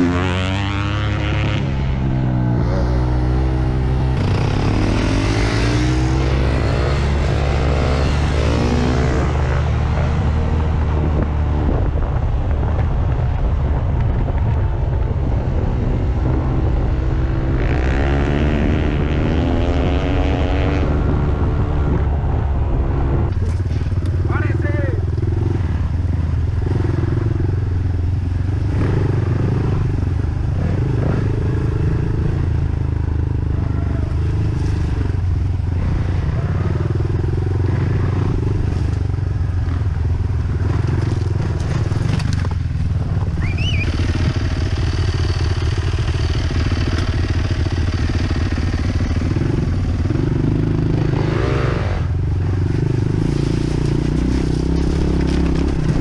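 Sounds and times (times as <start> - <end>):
dirt bike engine running: 23.4 - 56.0.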